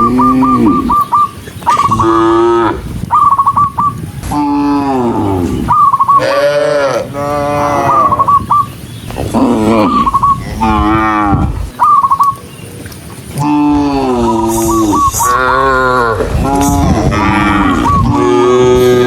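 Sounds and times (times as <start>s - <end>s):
cattle mooing: 0.0s - 1.0s, 1.7s - 2.9s, 4.3s - 8.2s, 9.3s - 11.7s, 13.4s - 19.0s
short high warbling calls: 0.0s - 4.2s, 5.4s - 6.5s, 7.6s - 12.6s, 13.4s - 18.4s.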